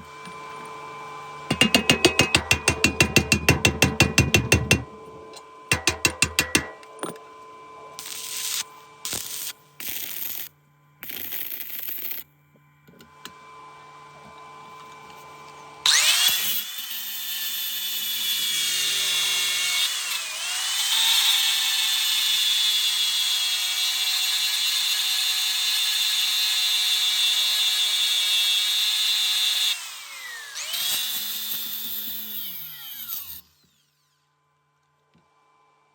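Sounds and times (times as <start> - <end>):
angle grinder cutting metal: 1.5 - 7.2, 8.0 - 12.2, 15.9 - 34.1.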